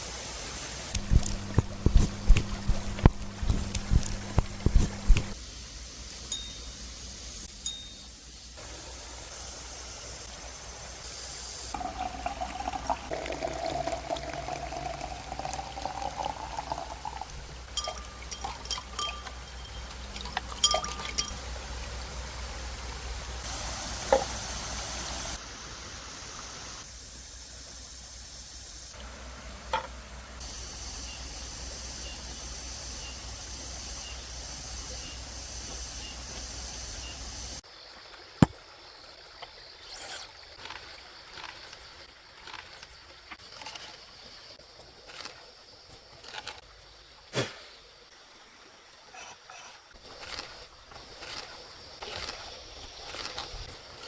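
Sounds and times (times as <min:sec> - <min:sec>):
outdoor background noise: 0:00.0 - 0:54.0
liquid pouring into container: 0:01.0 - 0:05.4, 0:11.7 - 0:21.4
cooking utensils clinking: 0:17.7 - 0:21.4.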